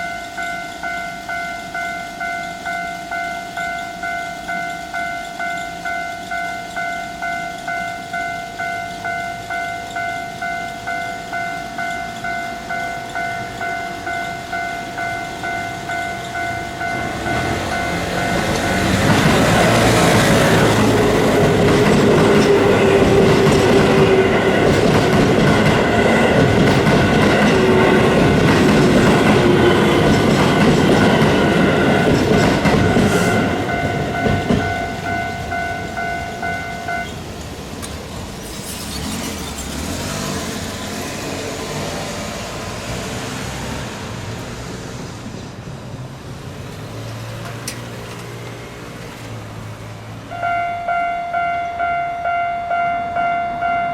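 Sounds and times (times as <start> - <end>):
level crossing alarm bell: 0.0 - 37.5, 50.2 - 53.9
electric train passing: 0.0 - 53.9.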